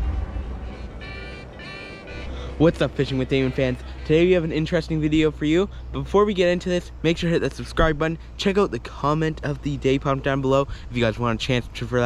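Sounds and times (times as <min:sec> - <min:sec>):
short tonal notes: 0:00.0 - 0:04.7.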